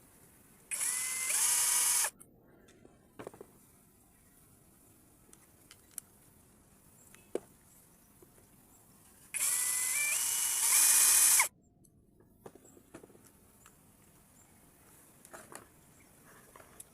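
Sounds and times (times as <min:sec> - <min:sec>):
power tool motor whirring: 0:00.7 - 0:02.1, 0:09.4 - 0:11.5
small parts clicking: 0:05.3 - 0:06.1.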